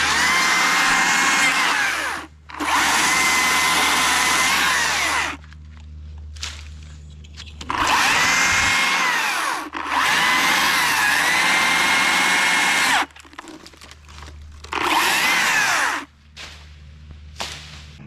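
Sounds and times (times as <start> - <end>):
chainsaw revving and idling: 0.0 - 5.4, 7.7 - 13.1, 14.6 - 16.1.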